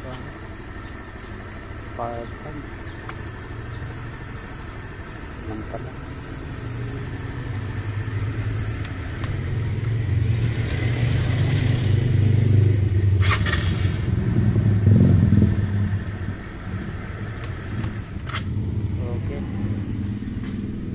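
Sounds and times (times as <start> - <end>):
motorcycle engine running: 0.0 - 20.9
sharp clicks: 3.0 - 3.3, 8.4 - 11.0, 17.3 - 18.6.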